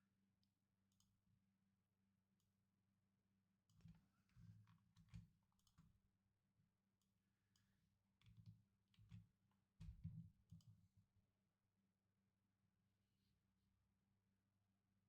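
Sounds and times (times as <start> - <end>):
computer mouse and keyboard clicks: 3.7 - 5.9.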